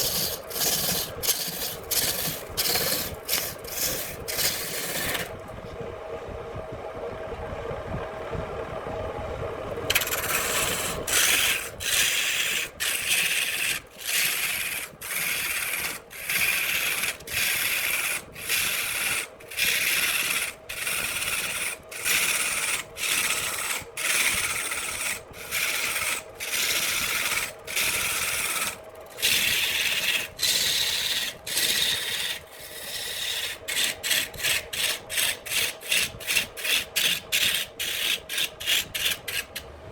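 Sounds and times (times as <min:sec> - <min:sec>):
hand tool rasping on wood: 0:00.0 - 0:05.3, 0:09.9 - 0:39.6
steady hum: 0:00.0 - 0:39.9.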